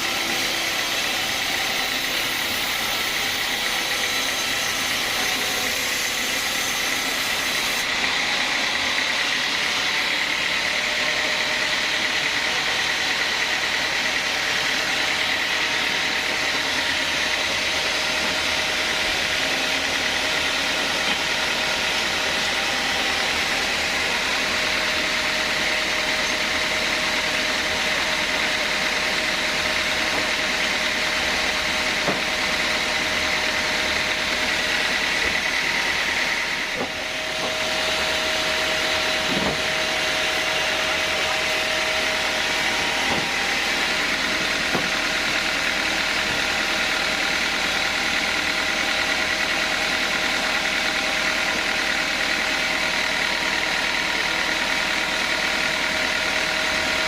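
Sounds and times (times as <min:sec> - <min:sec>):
band saw machinery whining: 0:00.0 - 0:57.0.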